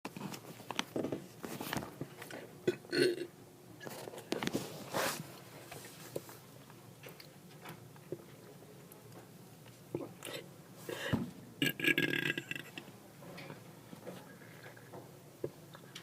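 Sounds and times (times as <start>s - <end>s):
person burping: 2.6s - 3.3s, 11.0s - 12.8s.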